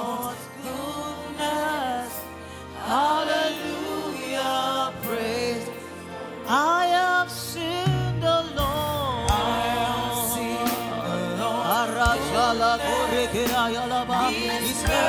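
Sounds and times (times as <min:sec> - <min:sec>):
voices singing: 0:00.0 - 0:15.0
band with low bass: 0:07.9 - 0:13.9.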